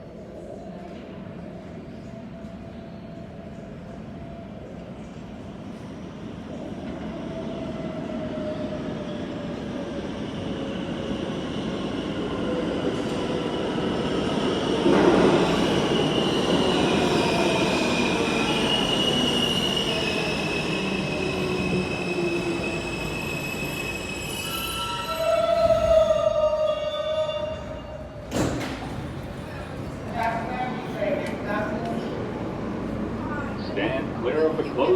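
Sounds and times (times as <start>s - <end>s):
subway train approaching: 0.0s - 34.9s
train wheels squealing: 15.3s - 28.1s.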